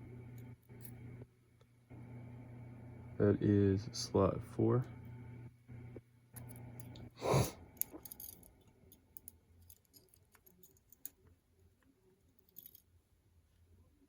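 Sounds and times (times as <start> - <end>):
noisy exhale: 7.2 - 7.6.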